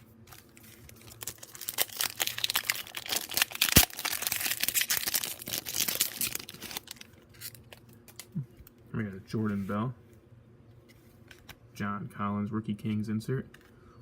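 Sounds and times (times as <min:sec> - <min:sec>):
wrapper crinkling: 0:00.3 - 0:08.2
wrapper tearing: 0:00.3 - 0:08.3.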